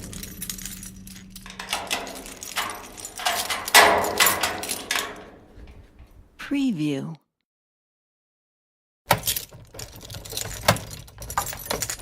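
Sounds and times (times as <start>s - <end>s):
keys jangling and clicking: 0.0s - 6.2s, 9.1s - 12.0s.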